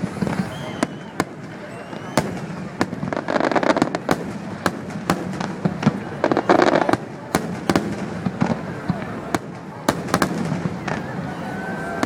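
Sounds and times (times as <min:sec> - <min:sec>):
fireworks bangs and cracks: 0:00.0 - 0:12.0
fireworks crackling: 0:00.0 - 0:12.0.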